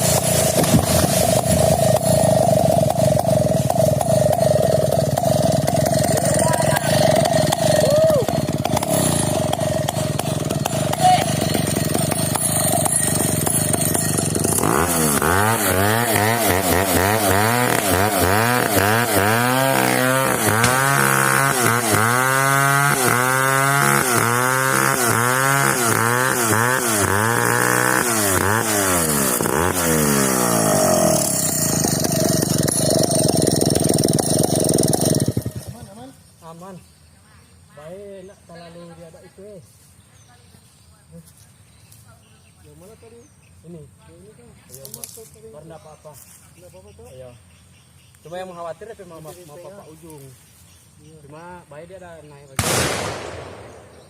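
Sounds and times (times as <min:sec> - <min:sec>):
chainsaw running: 0:00.0 - 0:36.6.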